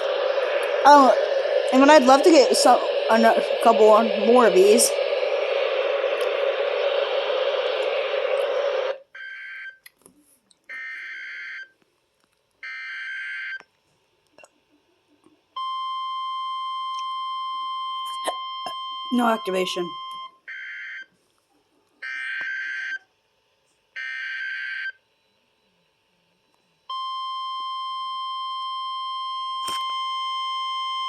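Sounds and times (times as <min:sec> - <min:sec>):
buzzy data bursts: 0:00.0 - 0:09.0
high alert tone: 0:00.0 - 0:09.0
loud rushing noise: 0:00.0 - 0:09.0.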